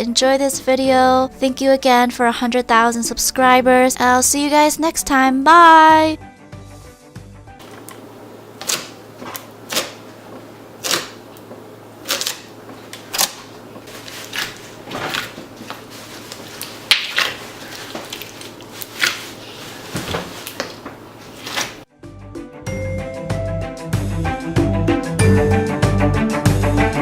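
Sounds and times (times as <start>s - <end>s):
slime squished by hand: 8.6s - 10.1s, 10.8s - 21.8s.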